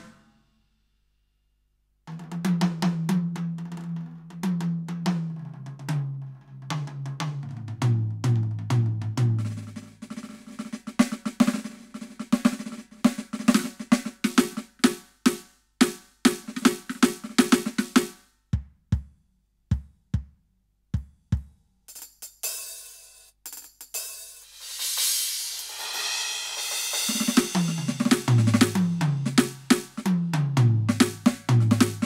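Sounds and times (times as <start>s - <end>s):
snare and tom strokes: 0.0s - 0.4s, 6.7s - 18.2s, 21.0s - 32.0s
bass drum kicks: 18.6s - 19.1s
cymbal wash: 24.3s - 28.0s.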